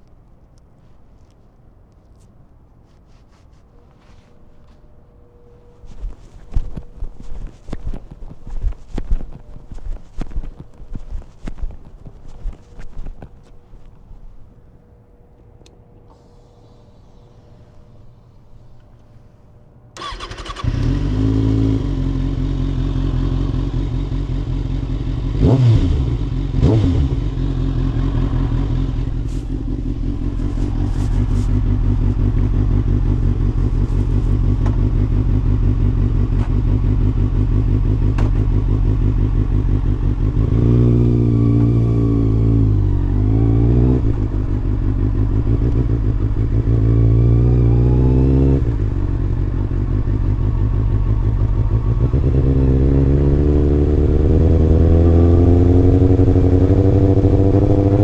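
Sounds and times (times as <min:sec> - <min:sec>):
motorcycle engine revving: 0:20.0 - 0:58.0.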